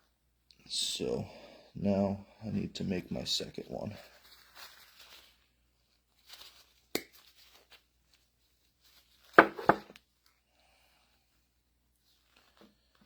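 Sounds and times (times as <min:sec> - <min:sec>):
rubber rustling: 0:03.9 - 0:10.4.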